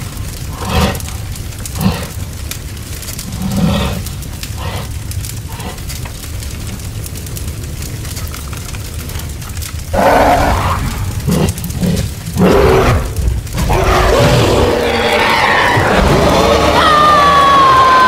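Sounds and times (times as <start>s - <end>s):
animal-like cries: 13.7s - 18.0s.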